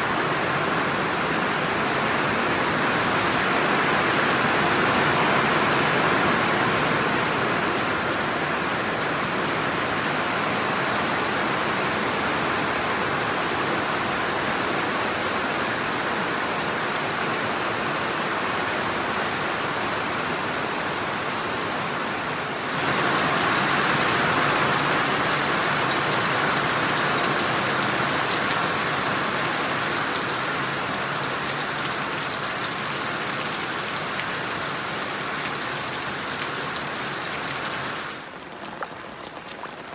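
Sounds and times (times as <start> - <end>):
loud rain patter: 13.0 - 39.2
steady rain hiss: 19.9 - 38.5.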